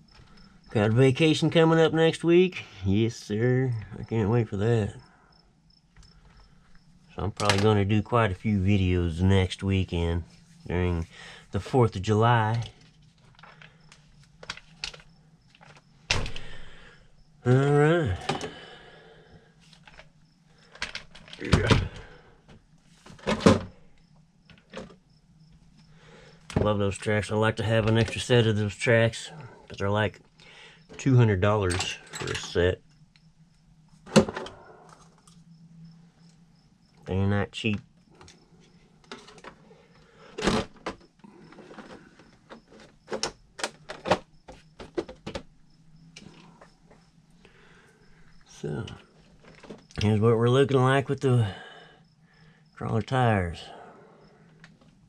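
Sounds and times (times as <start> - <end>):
hard objects clicking and knocking: 19.8 - 23.8, 40.3 - 45.5
hard objects clattering: 39.0 - 45.6.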